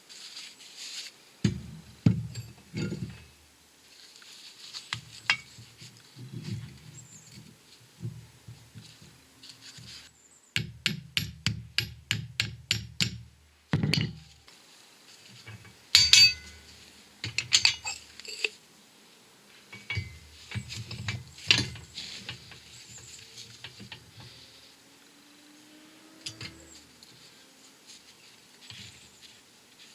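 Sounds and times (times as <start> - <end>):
metal tools clinking on metal: 15.5 - 18.6, 19.7 - 24.0, 26.2 - 26.8.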